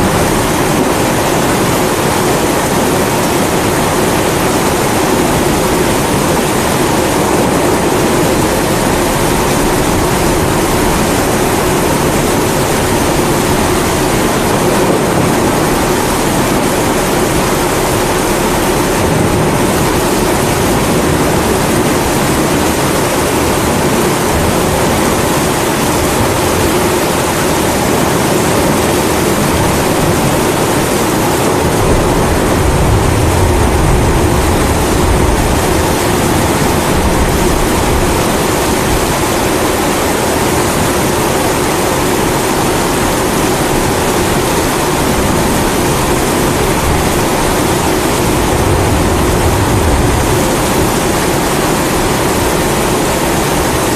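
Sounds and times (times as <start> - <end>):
falling rain: 0.0 - 53.9
low rumble: 7.5 - 22.7, 31.4 - 39.2, 45.1 - 53.5.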